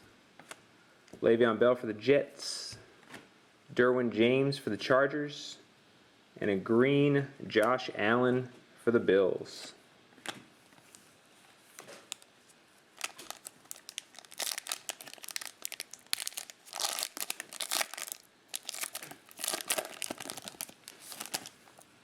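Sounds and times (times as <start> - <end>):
foil wrapper tearing and crinkling: 13.0 - 21.9.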